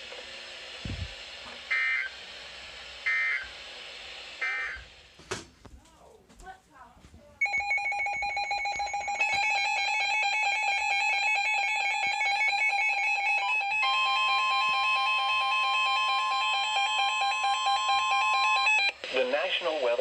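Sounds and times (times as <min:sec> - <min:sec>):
pulsing electronic ringing tone: 0:07.4 - 0:18.9
steady higher tone: 0:07.4 - 0:18.9.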